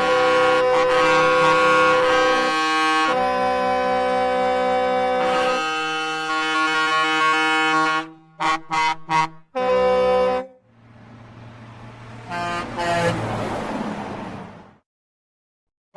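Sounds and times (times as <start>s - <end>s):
truck air horn blasts: 0.0s - 10.7s, 12.2s - 13.3s.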